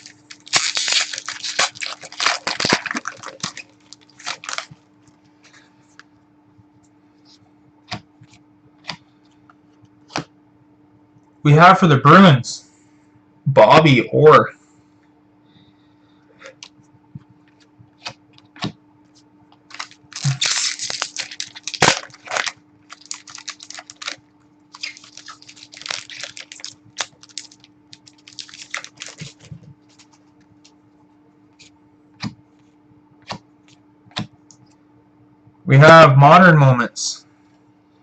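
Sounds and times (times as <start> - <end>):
cards and wrappers rustling: 0.0 - 6.0, 19.7 - 30.7
steady low hum: 0.0 - 38.0.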